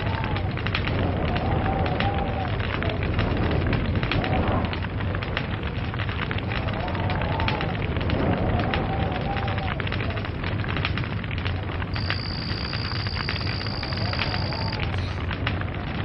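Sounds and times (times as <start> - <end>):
log fire crackling: 0.0 - 16.0
steady high whistle: 12.0 - 15.0.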